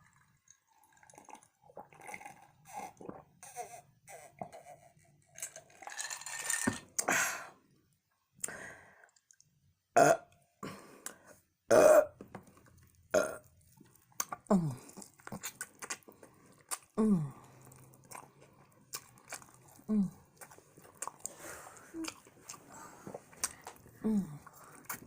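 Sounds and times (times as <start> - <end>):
person burping loudly: 10.0 - 10.3, 11.7 - 12.2, 13.1 - 13.5.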